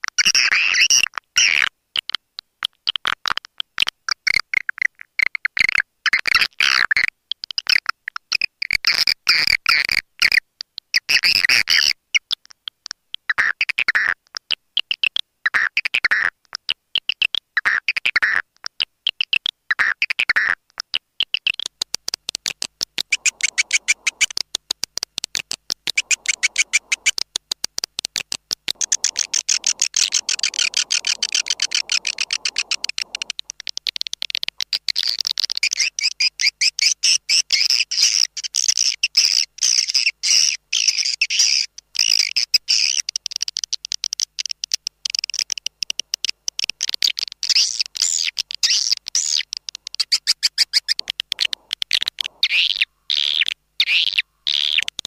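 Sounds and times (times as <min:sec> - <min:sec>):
swiftlet chirps and twitters: 0:23.0 - 0:24.5, 0:25.4 - 0:27.3, 0:28.7 - 0:33.9.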